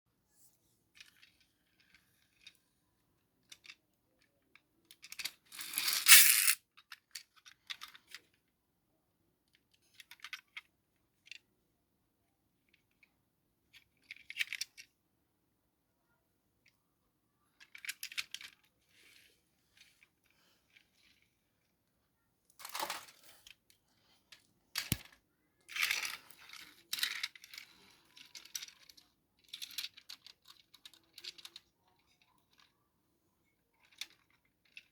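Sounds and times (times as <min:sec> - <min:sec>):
clicks and rattles of small objects: 0:00.9 - 0:02.7, 0:03.4 - 0:08.5, 0:13.7 - 0:14.9, 0:17.5 - 0:21.4, 0:22.5 - 0:32.8, 0:33.7 - 0:34.9.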